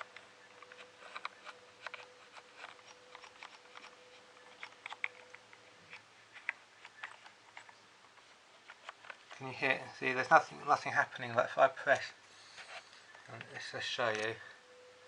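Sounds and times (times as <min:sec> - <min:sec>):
keyboard keys clicking: 0:00.0 - 0:05.4
faint steady tone: 0:00.0 - 0:15.0.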